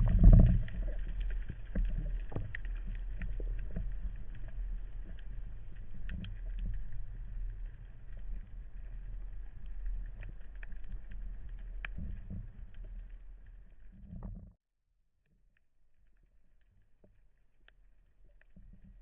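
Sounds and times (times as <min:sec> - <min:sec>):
underwater rumble of moving water: 0:00.0 - 0:14.6, 0:15.8 - 0:19.0
faint clicks: 0:00.1 - 0:14.5.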